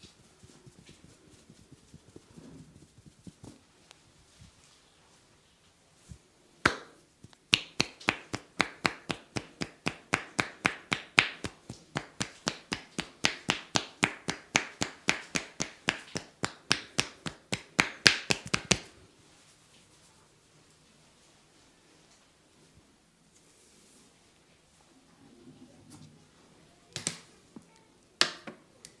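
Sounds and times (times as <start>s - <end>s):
hands slapping in massage: 6.6s - 18.9s.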